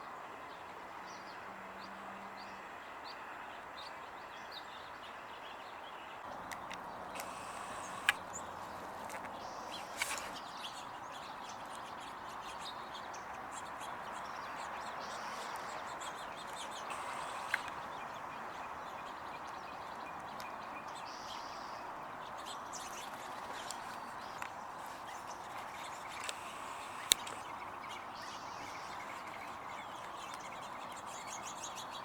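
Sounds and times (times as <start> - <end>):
faint songbird chirps: 0.0 - 32.0
steady outdoor hiss: 0.0 - 32.0
short sharp clicks: 6.5 - 8.5.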